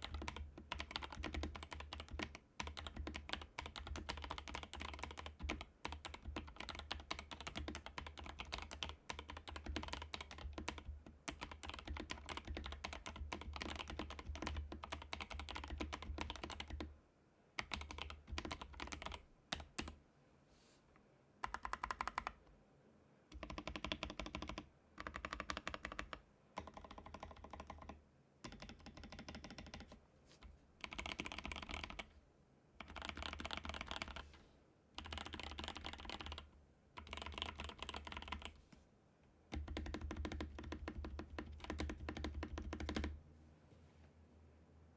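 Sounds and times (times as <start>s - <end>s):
typing on mechanical keyboard: 0.0s - 16.9s, 17.6s - 20.0s, 21.4s - 22.4s, 23.3s - 30.0s, 30.8s - 32.1s, 32.8s - 34.3s, 35.0s - 38.6s, 39.5s - 43.2s.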